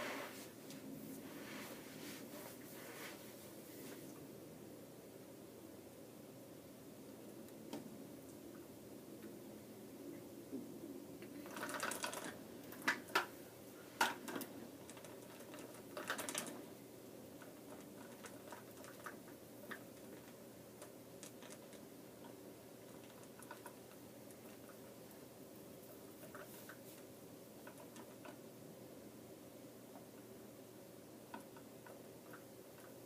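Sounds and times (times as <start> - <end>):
steady low hum: 0.0 - 33.0
plastic toy track clacking: 11.5 - 13.3, 14.0 - 16.6.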